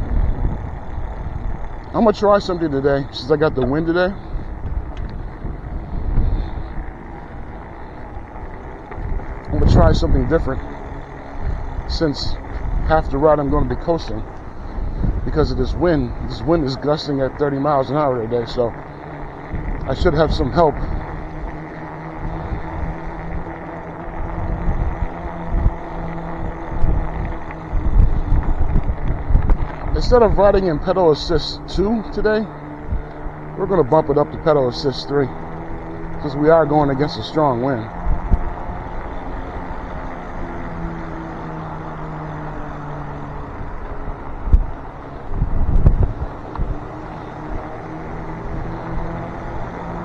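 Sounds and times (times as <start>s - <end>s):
gusty wind on microphone: 0.0s - 50.0s
steady low hum: 0.0s - 50.0s
tyre and road noise: 0.0s - 50.0s.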